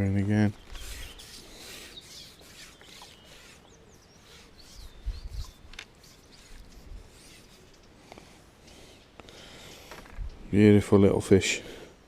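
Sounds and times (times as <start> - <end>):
bird chirps: 0.4 - 8.0.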